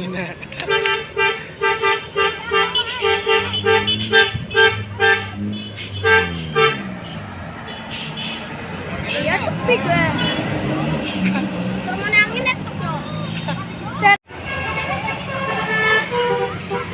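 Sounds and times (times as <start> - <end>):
musical bus horn chord blasts: 0.8 - 8.4, 14.4 - 16.9.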